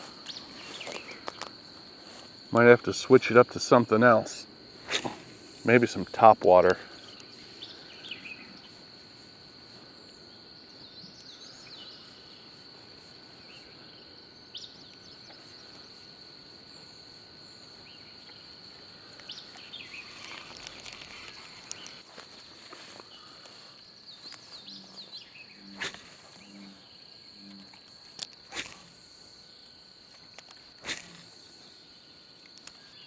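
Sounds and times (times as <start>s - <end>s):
high-pitched insect chorus: 0.0s - 33.0s
small chirps and clicks: 19.2s - 22.0s, 24.2s - 24.7s, 27.4s - 28.8s, 30.1s - 31.1s, 32.4s - 32.9s.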